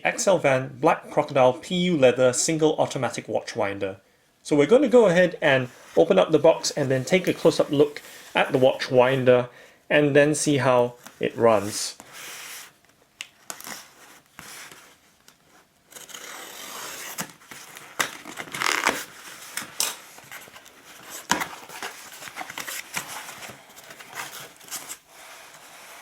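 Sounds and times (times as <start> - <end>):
packaging rustling and crinkling: 16.6 - 26.0.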